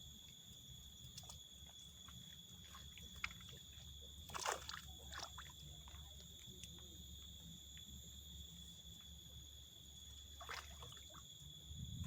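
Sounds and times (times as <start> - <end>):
insects trilling: 0.0 - 12.0.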